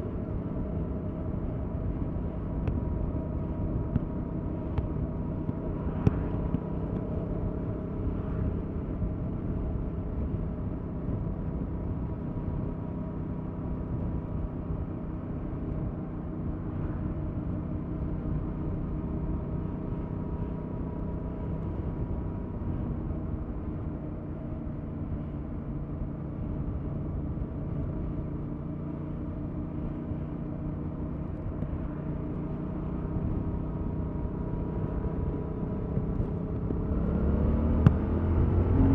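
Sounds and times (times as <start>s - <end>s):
motorcycle engine running: 30.8s - 38.9s.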